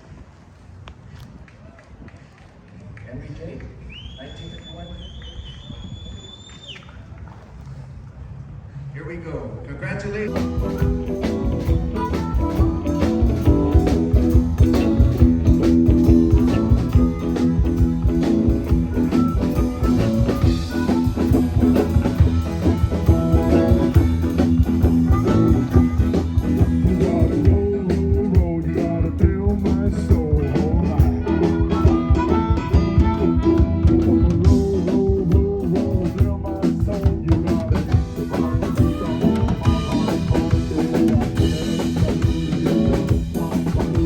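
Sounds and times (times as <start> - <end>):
live blues-rock band playing: 10.3 - 44.0.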